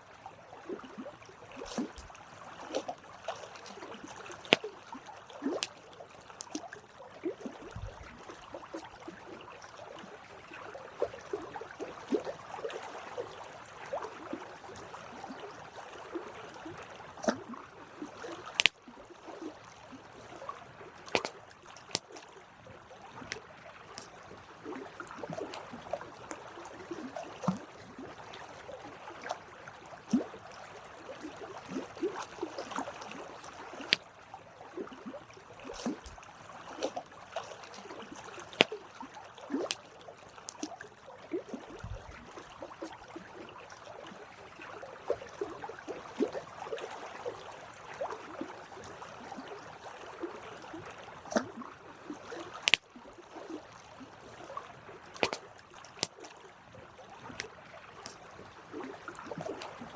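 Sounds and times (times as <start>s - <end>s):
campfire crackling and popping: 18.5s - 18.7s, 52.6s - 52.8s.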